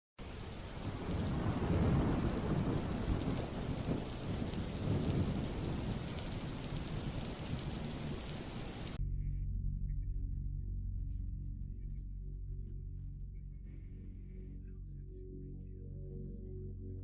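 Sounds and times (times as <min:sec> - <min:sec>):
low rolling thunder: 0:00.2 - 0:09.0
steady rain: 0:00.2 - 0:09.0.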